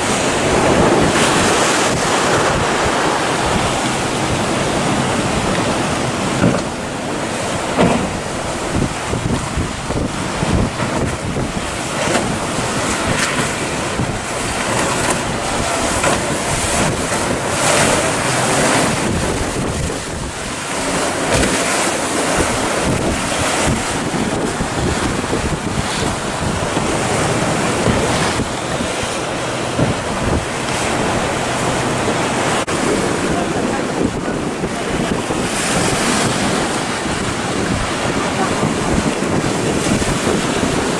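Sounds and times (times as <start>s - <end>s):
waves breaking: 0.0s - 40.9s
wind buffeting microphone: 0.0s - 40.9s.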